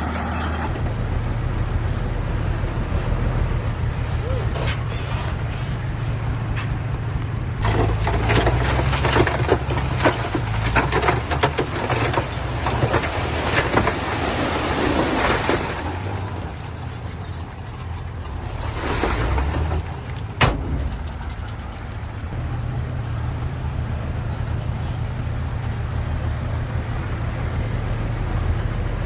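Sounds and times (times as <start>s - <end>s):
diesel bulldozer engine humming: 0.0s - 29.0s
metal clanks and knocks: 7.6s - 23.2s.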